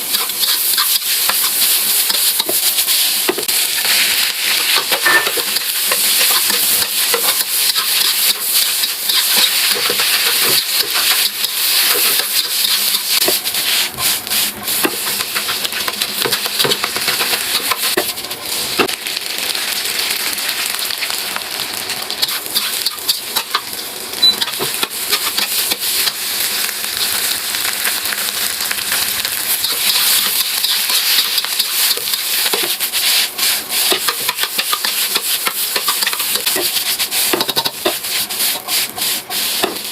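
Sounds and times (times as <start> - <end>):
food sizzling in pan: 0.0 - 39.9
utensil scraping pan: 4.6 - 18.2.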